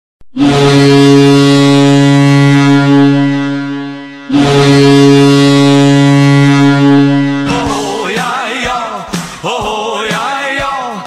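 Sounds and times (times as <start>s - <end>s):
goal horn blasts: 0.3s - 7.9s.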